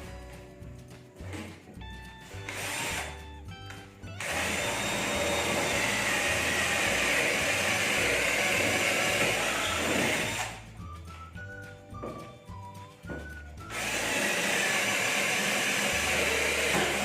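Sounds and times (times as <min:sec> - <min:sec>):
background music: 0:00.0 - 0:17.0
cordless drill running: 0:02.5 - 0:03.1, 0:04.2 - 0:10.6, 0:13.7 - 0:17.0.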